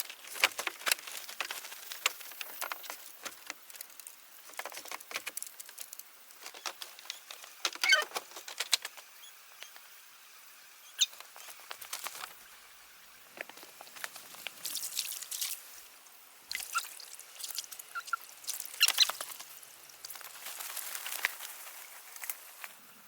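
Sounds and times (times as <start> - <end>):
rustling and crackling: 0.0 - 9.9, 11.0 - 12.5, 17.4 - 23.0.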